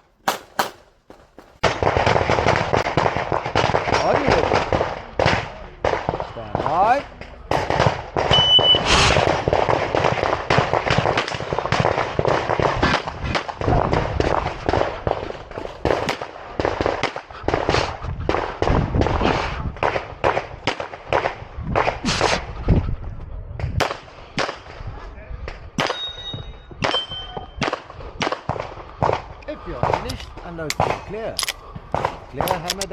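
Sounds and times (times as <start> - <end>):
pistol shots: 0.0 - 6.3, 29.8 - 32.9
shot timer beep: 8.4 - 8.9.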